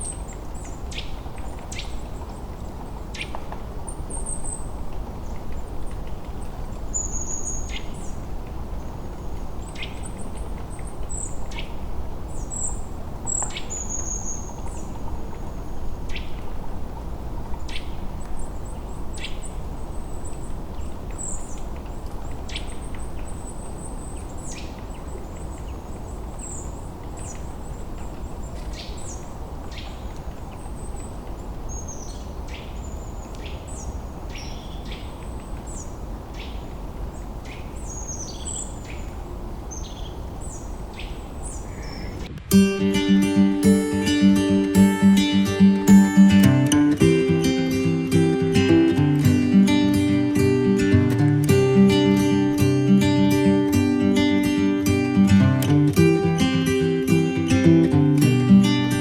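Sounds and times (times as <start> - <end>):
river water rushing: 41.2 - 59.0.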